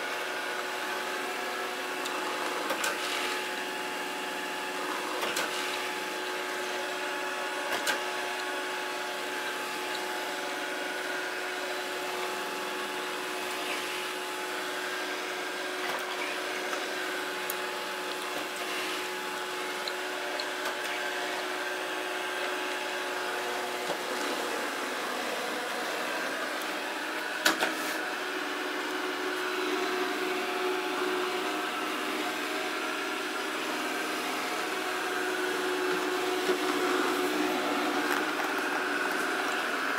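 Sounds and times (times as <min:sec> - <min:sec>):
robot vacuum humming: 0:00.0 - 0:39.9.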